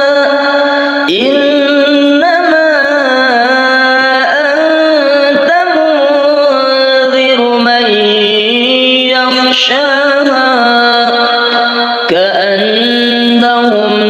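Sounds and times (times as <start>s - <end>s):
person chanting melodic recitation: 0.0s - 14.0s.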